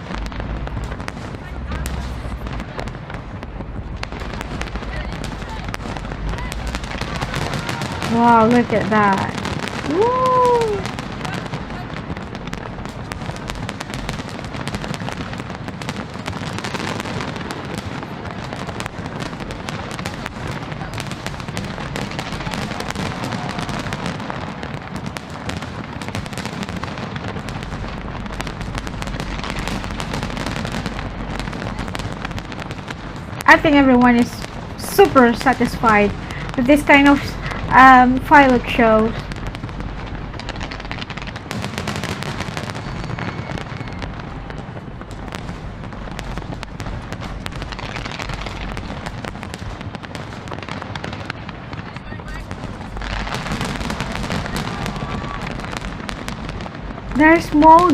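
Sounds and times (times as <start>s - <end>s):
low rumble: 0.0s - 14.5s
fireworks crackling and banging: 0.0s - 57.9s.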